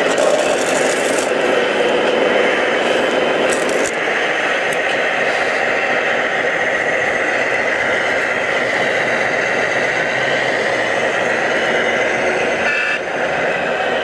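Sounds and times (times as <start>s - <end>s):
small electric motors whining: 0.0s - 5.7s.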